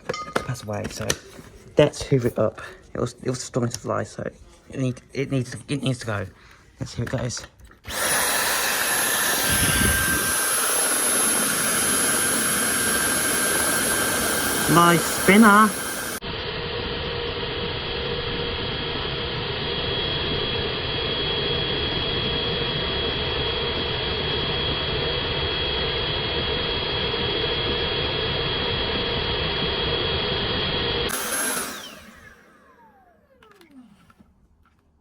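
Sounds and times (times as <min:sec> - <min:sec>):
cordless vacuum whining: 0:07.7 - 0:34.8.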